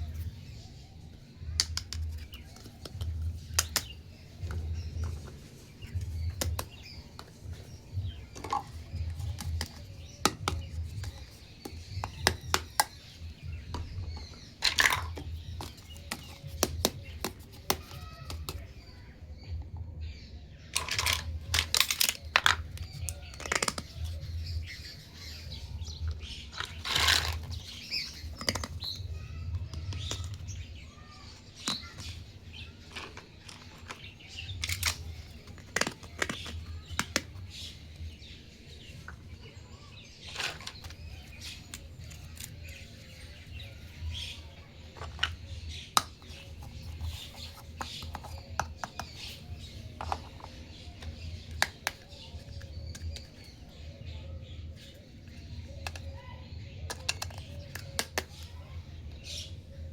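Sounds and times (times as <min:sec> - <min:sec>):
plastic toy pieces clicking: 0:20.8 - 0:24.2, 0:26.5 - 0:29.0, 0:32.8 - 0:37.5.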